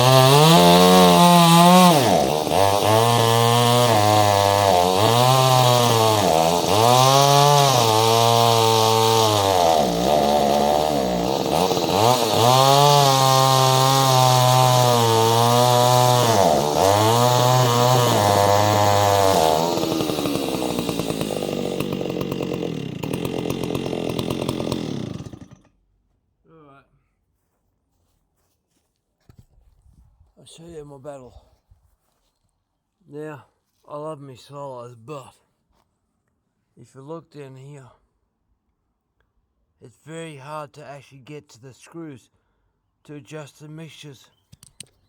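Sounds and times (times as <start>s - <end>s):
chainsaw running at high revs: 0.0s - 25.7s.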